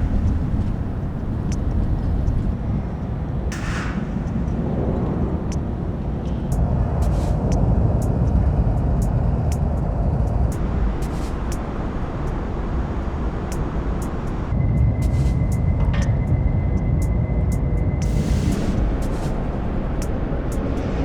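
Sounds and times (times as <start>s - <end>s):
distant road traffic rumble: 0.0s - 8.1s, 9.9s - 14.6s, 18.5s - 21.0s.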